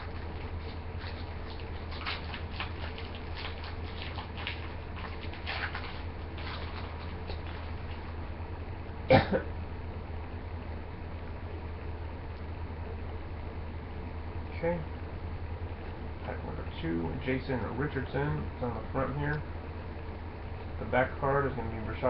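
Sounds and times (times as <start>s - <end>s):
foil wrapper crackling: 0.0s - 8.2s
person coughing: 9.1s - 9.6s.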